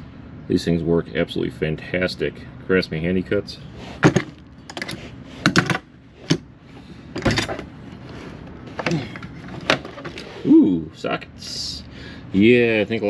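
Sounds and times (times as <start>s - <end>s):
tools rummaged in toolbox: 4.0s - 6.4s, 7.1s - 10.4s.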